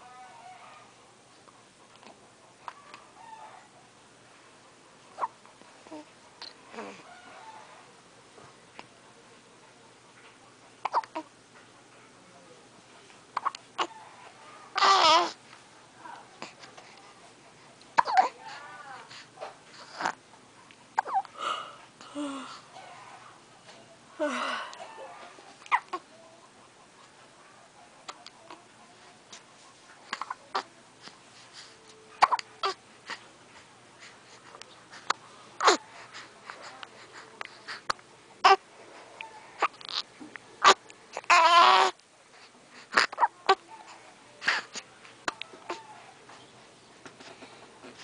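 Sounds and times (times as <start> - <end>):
baby squeaking and cooing: 13.4 - 15.4, 18.0 - 18.4, 21.0 - 21.3, 25.6 - 26.0, 32.2 - 32.8, 35.6 - 35.8, 38.4 - 38.6, 39.2 - 42.0
sneezing and choking: 18.0 - 18.4, 32.2 - 32.8.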